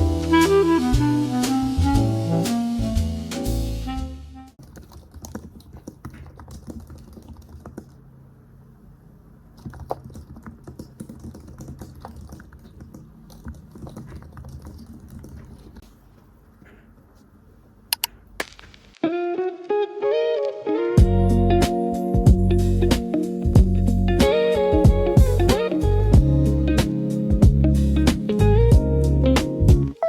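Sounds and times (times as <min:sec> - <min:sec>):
sharp clicks: 0:17.9 - 0:19.0.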